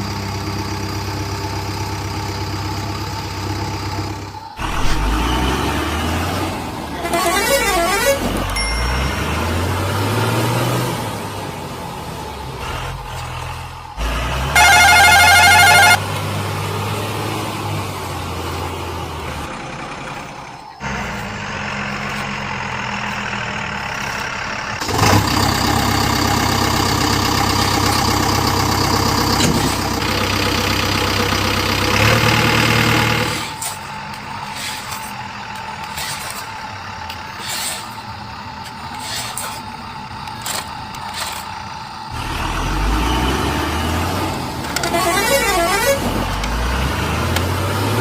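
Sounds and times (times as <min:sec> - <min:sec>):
simulated diesel truck engine: 0:00.0 - 0:48.0
loud steady tone: 0:14.0 - 0:16.0.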